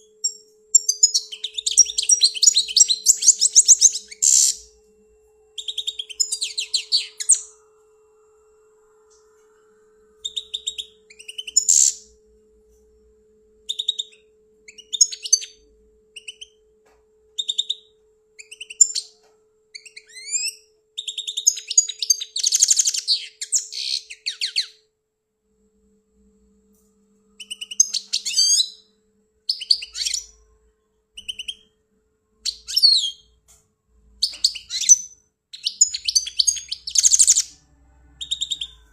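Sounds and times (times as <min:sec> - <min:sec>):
goldfinch twittering song: 0:34.2 - 0:37.6.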